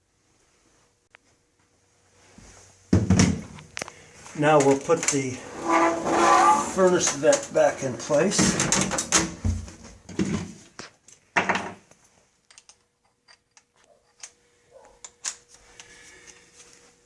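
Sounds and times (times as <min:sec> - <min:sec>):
metal pipe scraping: 0:05.3 - 0:07.3.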